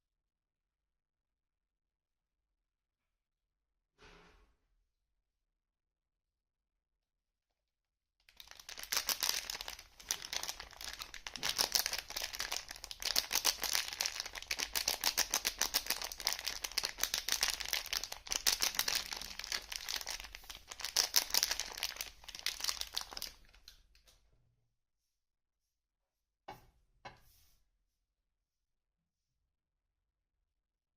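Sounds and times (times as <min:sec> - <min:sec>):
packaging crinkling and rustling: 0:08.3 - 0:23.8.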